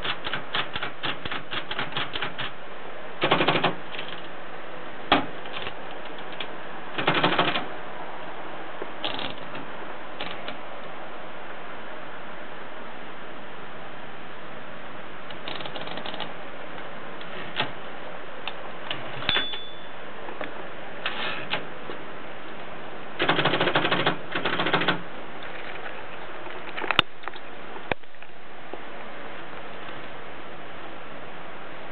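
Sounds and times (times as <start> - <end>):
typewriter keystrokes: 0.0 - 2.5, 3.2 - 4.2, 5.5 - 7.7, 23.2 - 25.0
steady hiss: 0.0 - 19.3, 19.9 - 31.9.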